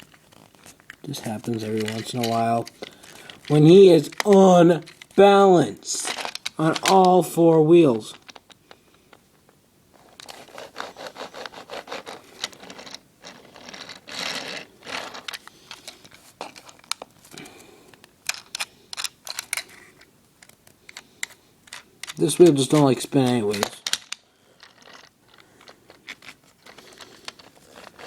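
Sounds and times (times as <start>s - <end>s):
plastic toy clicks and scrapes: 10.2s - 17.0s, 18.3s - 28.0s.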